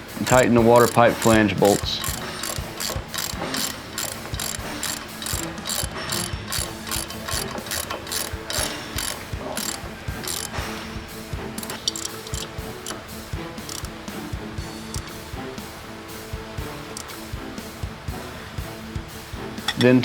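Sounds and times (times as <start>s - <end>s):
socket ratchet clicking: 0.2s - 11.0s, 11.6s - 14.0s, 14.8s - 15.2s.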